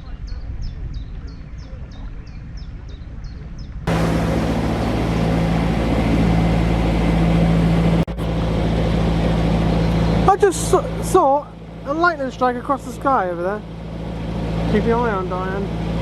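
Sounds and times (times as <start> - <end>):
boat engine running: 3.9 - 16.0.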